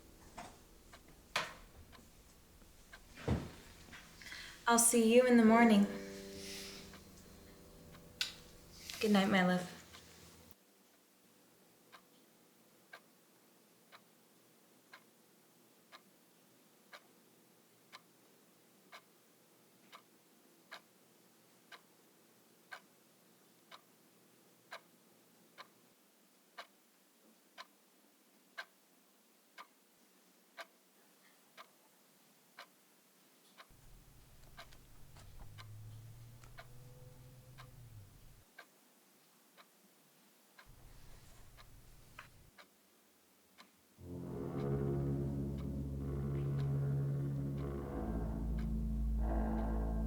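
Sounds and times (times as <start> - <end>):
clock ticking: 0.0 - 10.1, 33.6 - 38.7, 40.6 - 42.7, 44.0 - 50.0
low rumbling drone: 33.8 - 38.4, 40.7 - 42.4, 44.0 - 50.0.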